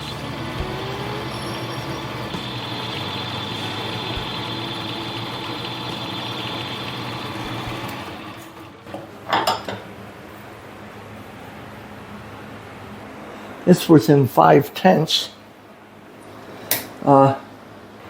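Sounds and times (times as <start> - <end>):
lathe whining: 0.0 - 9.1.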